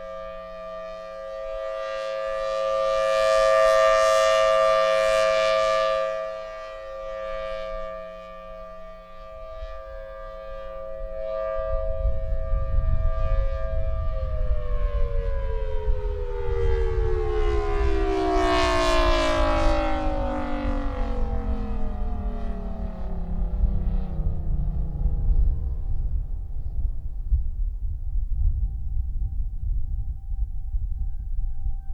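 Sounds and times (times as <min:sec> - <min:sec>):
civil defense siren two-tone signal: 0:00.0 - 0:31.9
wind rumble on microphone: 0:00.0 - 0:31.9.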